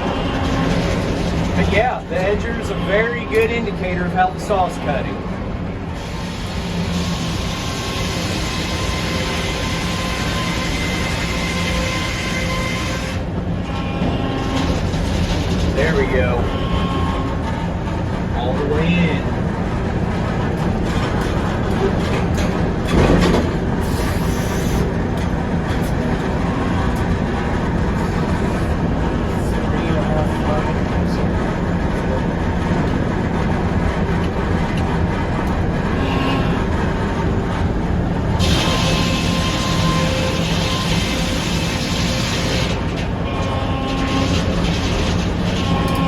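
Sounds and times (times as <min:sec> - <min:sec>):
constant machine hum: 0:00.0 - 0:46.0
sawmill saw cutting log: 0:06.0 - 0:13.2, 0:38.4 - 0:46.0.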